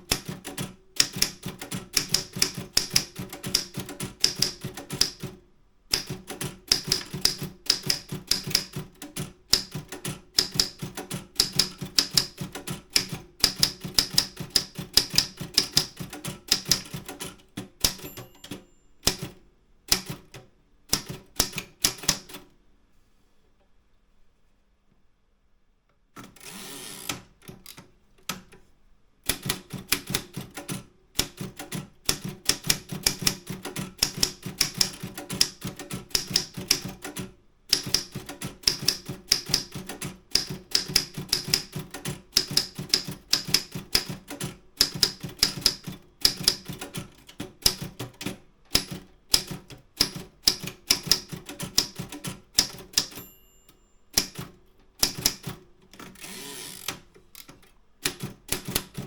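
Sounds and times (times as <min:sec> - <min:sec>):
typewriter key strikes: 0:00.0 - 0:22.4, 0:29.3 - 0:56.2, 0:58.1 - 0:59.0
typewriter bell ring: 0:17.8 - 0:19.2, 0:52.6 - 0:54.4.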